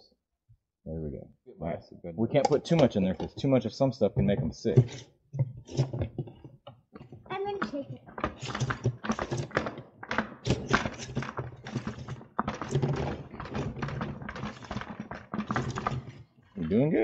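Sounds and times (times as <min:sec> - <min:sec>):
mineral salt rattling in container: 0:05.6 - 0:17.0.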